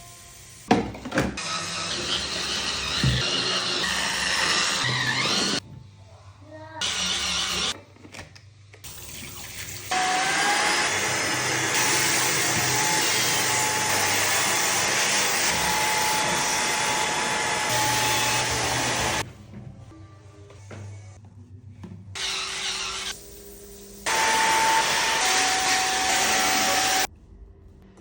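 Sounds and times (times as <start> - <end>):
upholstery vacuum suction: 1.4 - 5.6, 9.9 - 19.2
vacuum motor whine: 1.4 - 5.6, 9.9 - 19.2, 24.1 - 27.1.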